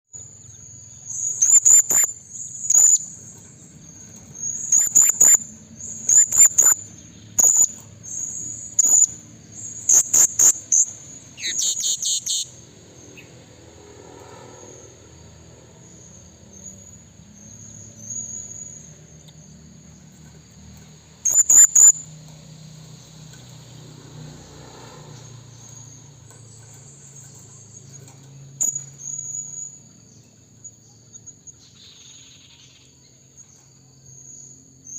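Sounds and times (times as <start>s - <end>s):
parrot shrill calls: 1.1s - 3.0s, 4.5s - 5.4s, 9.9s - 12.5s, 21.2s - 22.0s.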